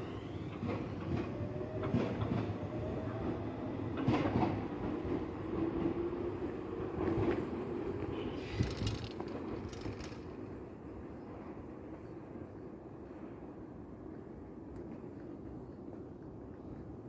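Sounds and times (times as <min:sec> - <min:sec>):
train wheels rumbling on rail: 0:00.0 - 0:13.4
wheels clacking over rail joints: 0:08.2 - 0:10.4.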